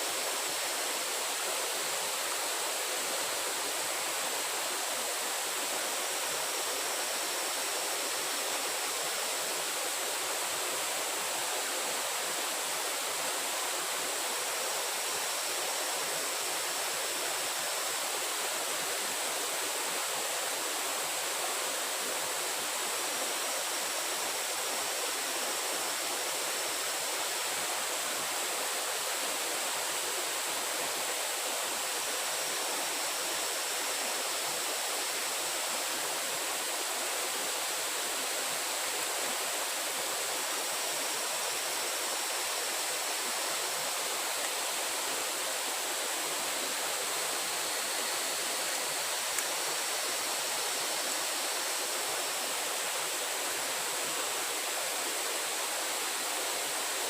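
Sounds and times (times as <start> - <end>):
running water rushing: 0.0 - 57.0.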